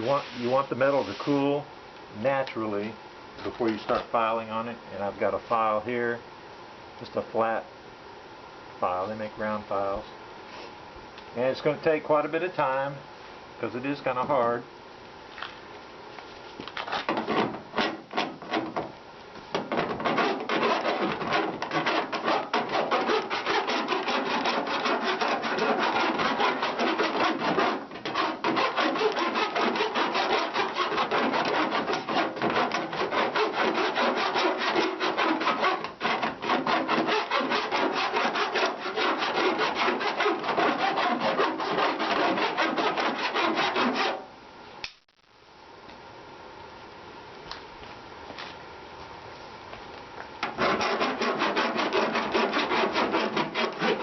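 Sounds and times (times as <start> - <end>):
hand file scraping metal: 19.6 - 44.2, 50.4 - 54.0.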